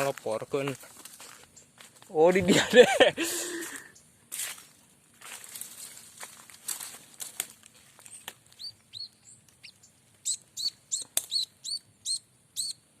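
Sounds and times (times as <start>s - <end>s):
small bird chirping: 7.8s - 13.0s.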